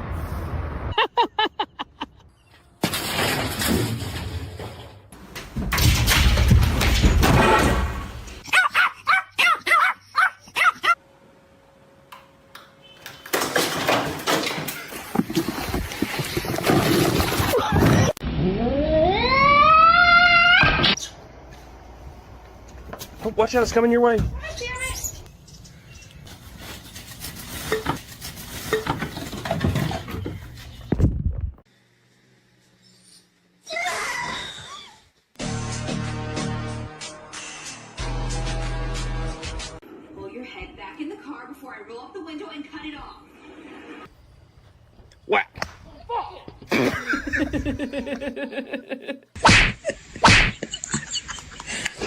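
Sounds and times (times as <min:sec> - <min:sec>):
dog barking: 0:08.5 - 0:11.0
hard objects clattering and knocking: 0:13.3 - 0:18.2, 0:27.7 - 0:30.5.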